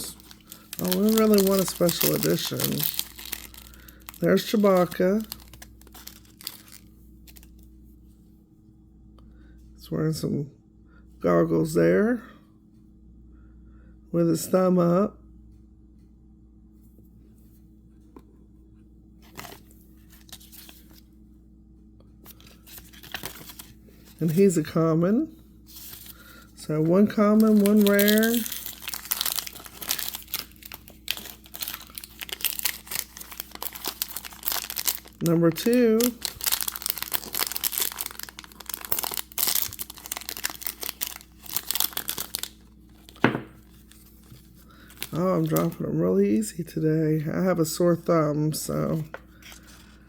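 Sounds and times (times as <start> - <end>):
plastic packaging rustling: 0.0 - 7.6, 22.3 - 24.7, 25.6 - 45.8
wrapper crinkling and tearing: 0.0 - 7.6, 22.3 - 24.6, 25.7 - 45.8
low steady hum: 0.0 - 50.0.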